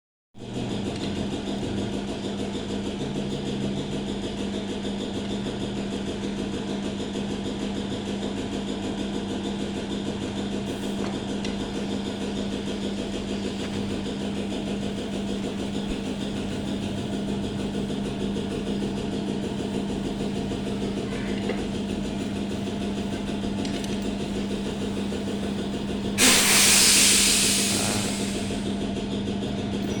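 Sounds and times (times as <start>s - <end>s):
motorcycle engine idling: 9.4s - 26.2s
loud hiss: 26.1s - 28.8s.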